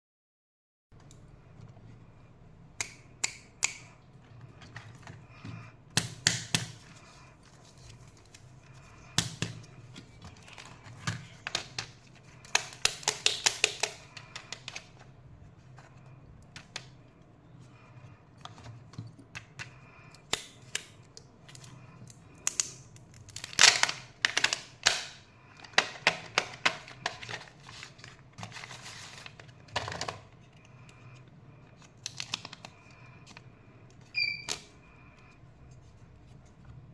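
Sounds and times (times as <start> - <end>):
plastic wrapper crackling: 22.4 - 25.1, 31.9 - 32.8.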